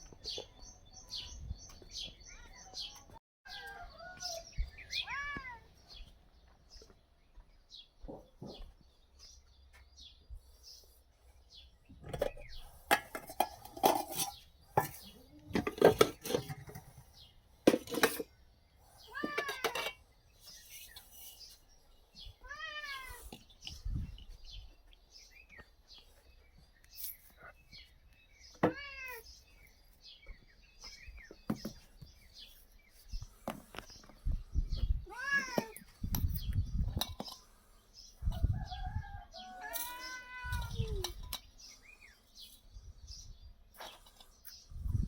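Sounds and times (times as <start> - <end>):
cat meowing: 5.0 - 5.6, 22.4 - 23.3, 28.7 - 29.3, 35.0 - 35.8.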